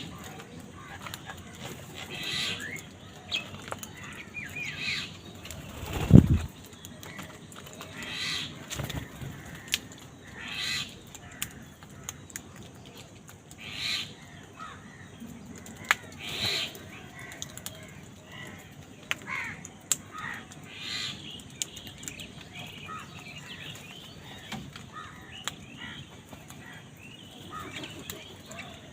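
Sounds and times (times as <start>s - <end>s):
crows cawing: 9.1s - 12.1s, 13.7s - 21.2s, 24.3s - 26.8s.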